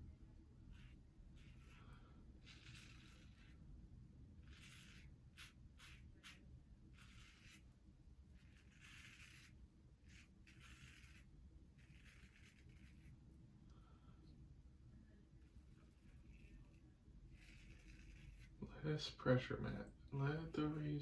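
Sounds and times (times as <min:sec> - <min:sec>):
razor scraping stubble: 0:00.7 - 0:03.6, 0:04.4 - 0:13.2, 0:15.4 - 0:18.7.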